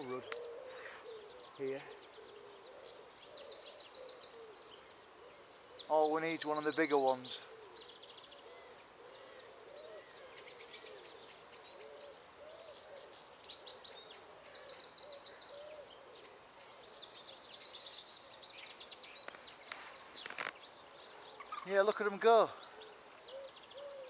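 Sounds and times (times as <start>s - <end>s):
songbirds twittering: 0.0s - 24.0s.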